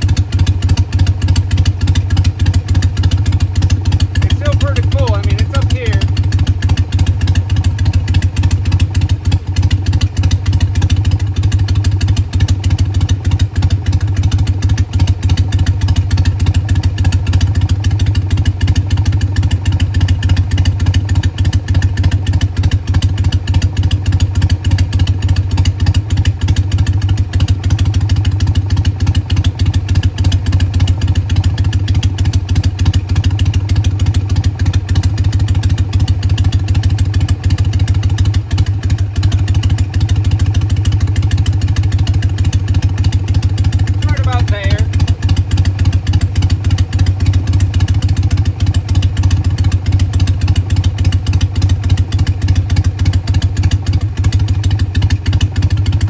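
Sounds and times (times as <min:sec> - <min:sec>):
motorcycle engine idling: 0:00.0 - 0:56.0.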